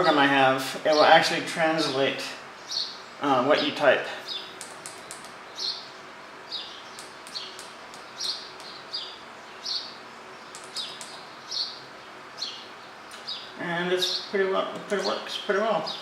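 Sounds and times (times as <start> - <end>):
small bird chirping: 2.6 - 16.0
light sharp clicks: 6.9 - 8.8, 10.5 - 11.3.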